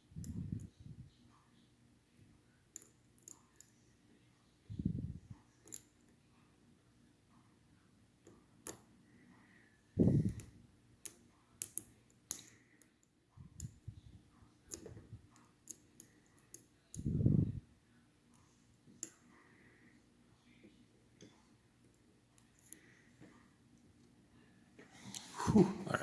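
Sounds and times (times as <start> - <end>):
lock picks clicking: 10.3 - 12.9.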